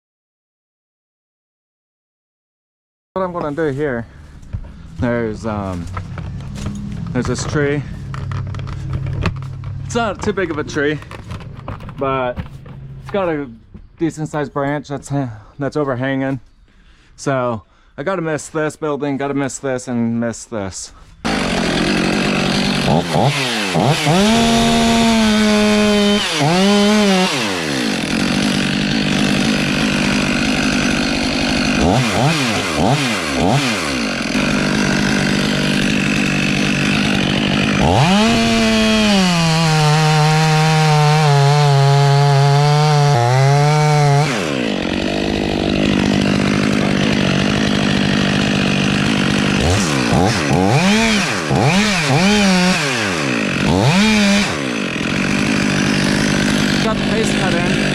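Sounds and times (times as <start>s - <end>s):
chainsaw cutting wood: 4.4s - 13.2s, 21.2s - 57.9s.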